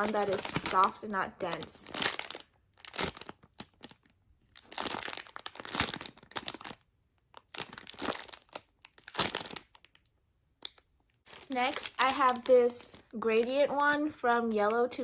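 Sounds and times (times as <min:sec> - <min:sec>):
plastic bag crinkling: 0:00.0 - 0:15.0.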